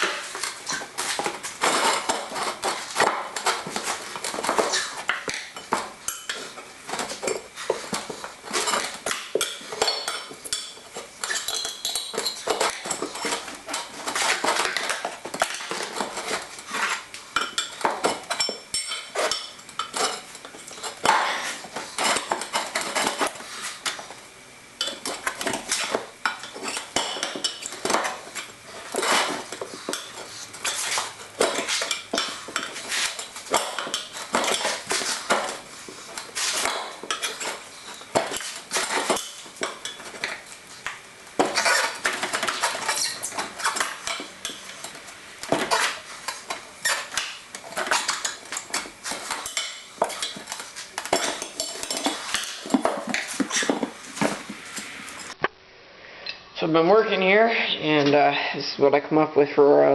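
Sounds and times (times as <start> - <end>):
metal tools clinking and clattering: 8.5 - 16.4, 45.7 - 53.9.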